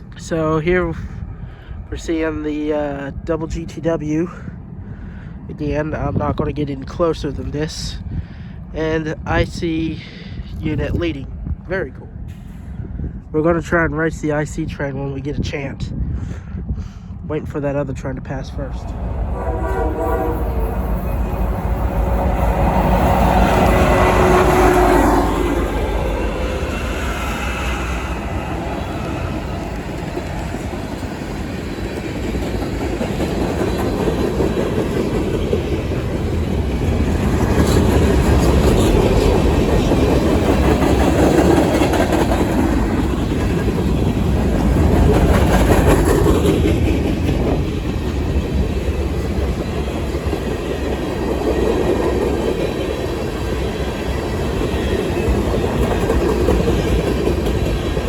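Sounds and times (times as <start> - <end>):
train wheels clacking over rail joints: 20.2 - 58.0.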